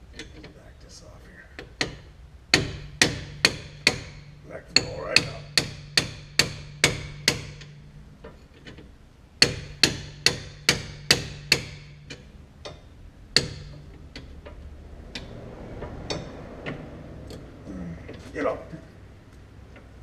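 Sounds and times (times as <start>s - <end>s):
hammer striking steel: 1.8s - 7.8s, 9.4s - 12.8s, 13.4s - 13.8s.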